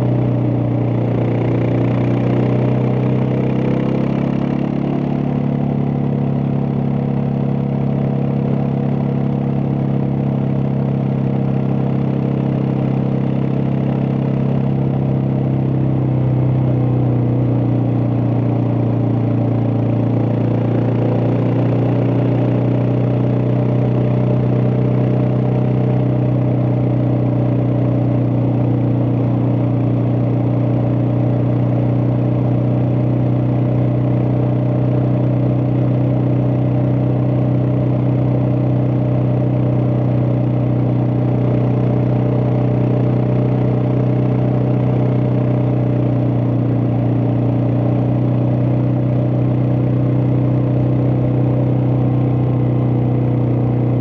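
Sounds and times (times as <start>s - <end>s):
motorcycle engine running steadily: 0.0s - 54.0s.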